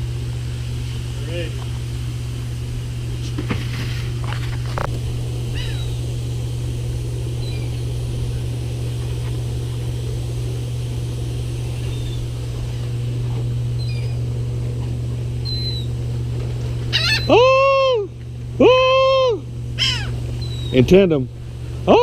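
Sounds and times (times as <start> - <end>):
motor droning: 0.0 - 22.0
high bird calls: 5.5 - 6.1, 7.3 - 9.8, 11.6 - 12.9, 13.8 - 14.3, 15.4 - 16.0, 16.9 - 17.7, 19.8 - 20.9.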